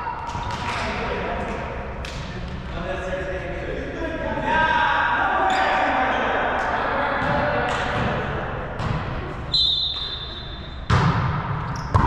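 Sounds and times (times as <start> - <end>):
volleyball hits: 7.2 - 10.2, 10.8 - 12.0
referee's whistle: 9.5 - 10.9.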